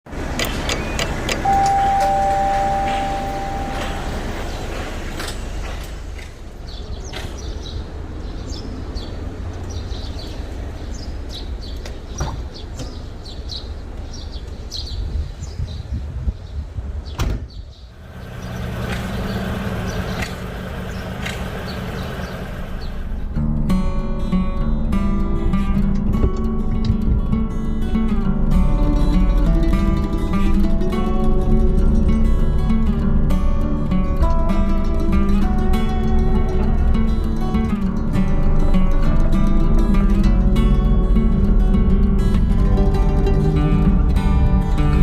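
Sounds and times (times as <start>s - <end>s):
low vehicle rumble: 0.1s - 17.0s, 17.7s - 45.0s
vehicle doors clicking and knocking: 0.2s - 6.4s
two steady tones: 1.4s - 4.8s
steady hum: 1.4s - 5.1s.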